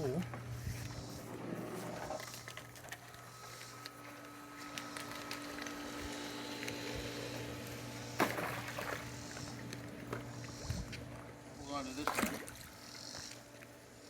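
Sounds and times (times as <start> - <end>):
steady low hum: 0.0 - 14.0
water splash: 8.2 - 9.1, 12.0 - 12.7.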